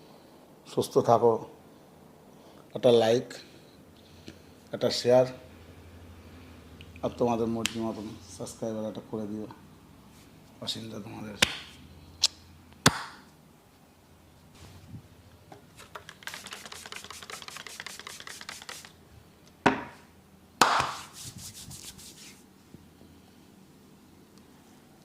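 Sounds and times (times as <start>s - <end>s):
hands slapping head: 11.4s - 11.7s, 12.8s - 13.2s, 16.0s - 18.9s, 20.6s - 21.9s
rapid hand tapping strokes: 15.8s - 19.0s, 20.6s - 22.4s.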